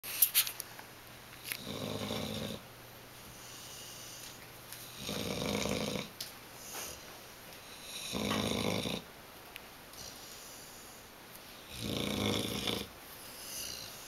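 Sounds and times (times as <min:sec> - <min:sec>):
dog snoring: 0:01.6 - 0:02.6, 0:04.9 - 0:06.1, 0:07.6 - 0:09.1, 0:11.6 - 0:14.0.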